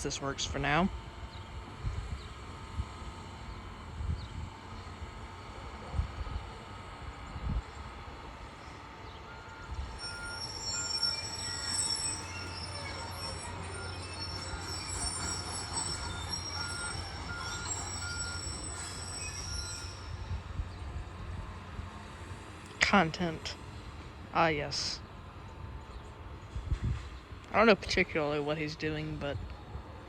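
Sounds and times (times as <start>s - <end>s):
short beeps: 9.3s - 20.4s
high metallic squeal: 9.7s - 20.8s.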